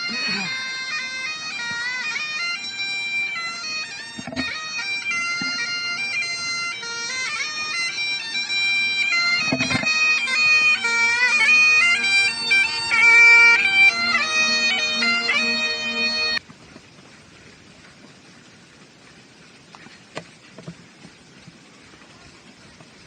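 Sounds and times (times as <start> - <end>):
bagpipes playing a tune: 0.0 - 16.4.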